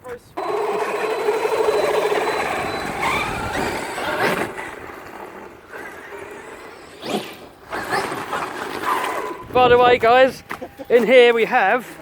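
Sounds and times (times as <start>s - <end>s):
electric motor whining: 0.4s - 5.0s.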